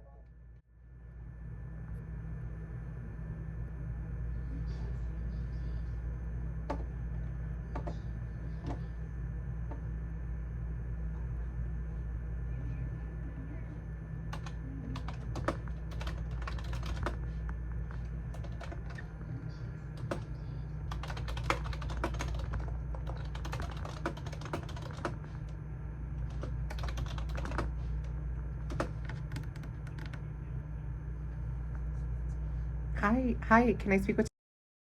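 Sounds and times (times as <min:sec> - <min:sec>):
low hum: 0:00.0 - 0:34.3
computer keyboard typing: 0:14.3 - 0:17.2, 0:17.8 - 0:19.2, 0:20.0 - 0:25.5, 0:26.2 - 0:30.2.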